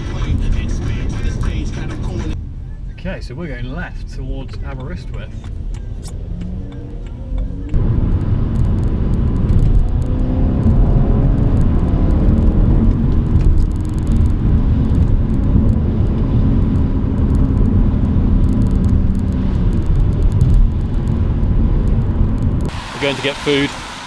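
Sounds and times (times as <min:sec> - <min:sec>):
car engine accelerating: 0:00.0 - 0:02.4, 0:04.5 - 0:24.0
road and tyre noise: 0:00.0 - 0:24.0.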